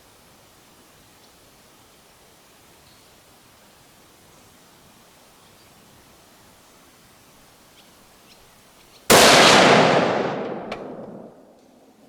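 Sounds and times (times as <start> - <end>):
rifle shot echoing: 9.1 - 11.5.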